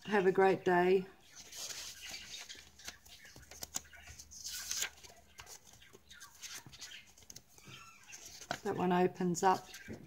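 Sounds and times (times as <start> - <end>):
paper rustling and crinkling: 1.3 - 8.7.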